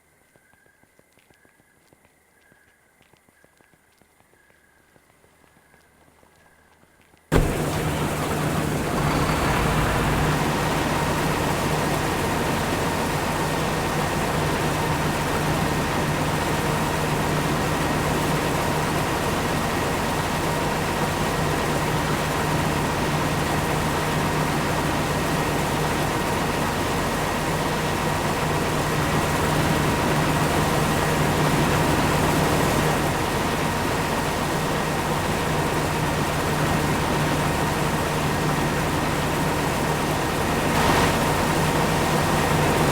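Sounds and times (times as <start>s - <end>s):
high machine whine: 7.3s - 33.5s, 40.4s - 42.9s
heavy engine drone: 7.3s - 42.9s.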